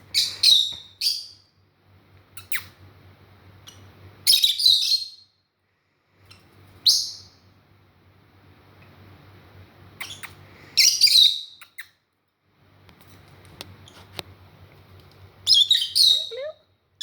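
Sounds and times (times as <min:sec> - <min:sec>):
parrots squawking: 0:15.5 - 0:16.6.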